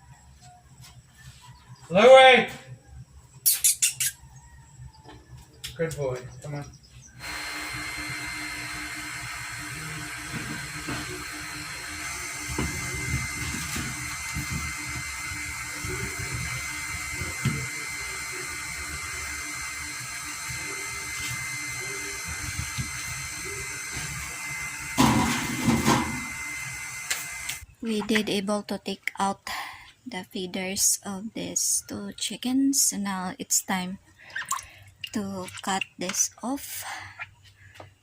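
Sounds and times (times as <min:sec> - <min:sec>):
water sloshing in a container: 0:34.2 - 0:36.3.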